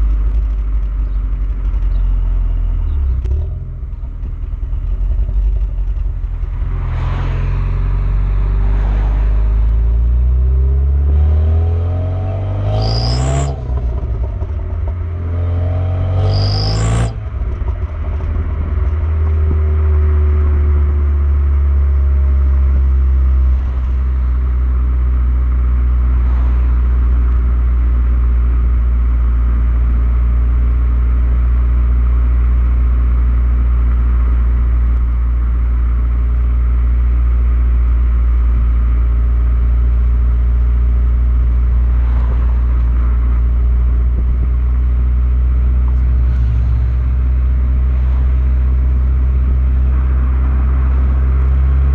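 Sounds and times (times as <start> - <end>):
car engine low drone: 0.0 - 51.9
pitched tone falling: 11.6 - 18.4.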